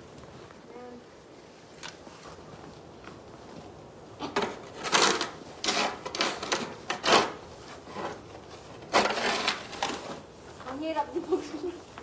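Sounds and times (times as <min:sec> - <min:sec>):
crunching and scraping in snow: 0:08.9 - 0:10.2.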